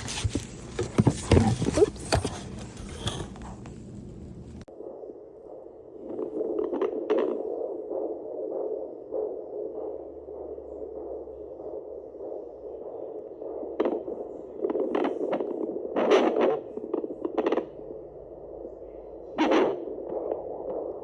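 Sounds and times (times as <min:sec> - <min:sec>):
scratchy crackles: 0:00.0 - 0:04.7, 0:13.8 - 0:17.9, 0:19.4 - 0:21.0.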